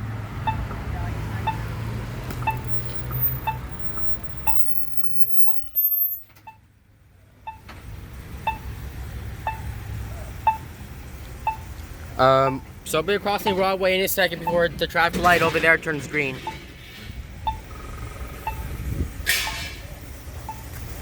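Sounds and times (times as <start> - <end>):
low traffic rumble: 0.0 - 21.0
short high beeps: 0.5 - 0.7, 1.4 - 1.7, 2.4 - 6.6, 8.5 - 8.7, 9.5 - 9.7, 10.5 - 10.7, 11.5 - 11.7, 17.5 - 17.7, 18.4 - 18.7.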